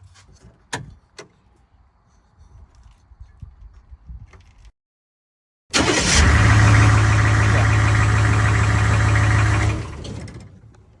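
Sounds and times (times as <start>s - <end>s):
diesel engine starting and running: 5.7s - 11.0s.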